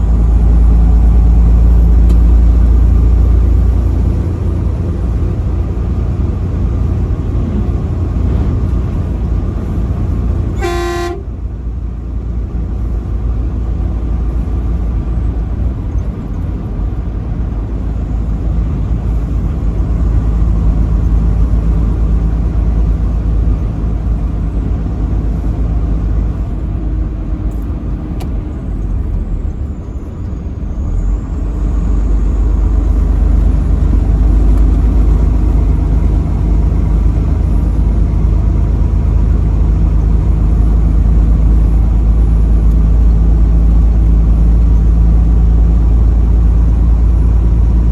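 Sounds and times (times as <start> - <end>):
truck engine rumble: 0.0 - 47.9
truck horn toot: 10.5 - 11.4.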